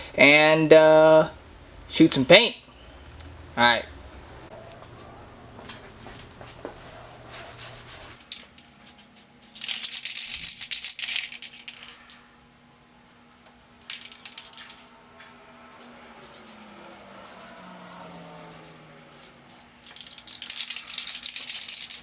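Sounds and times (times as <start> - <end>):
spray can ball rattling: 8.2 - 12.0, 13.8 - 14.9, 15.7 - 16.6, 17.2 - 22.0.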